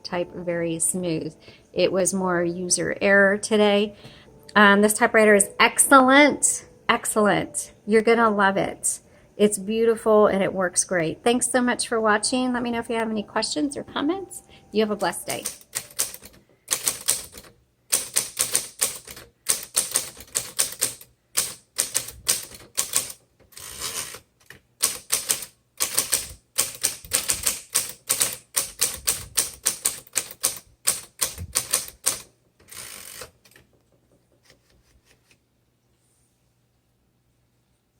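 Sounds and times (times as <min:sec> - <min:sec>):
manual typewriter typing: 0:15.0 - 0:33.9.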